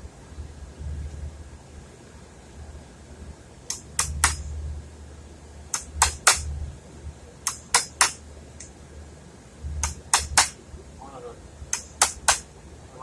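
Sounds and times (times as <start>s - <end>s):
hammer tapping wood chisel: 3.7s - 4.4s, 5.8s - 6.4s, 7.5s - 8.2s, 9.8s - 10.6s, 11.8s - 12.4s.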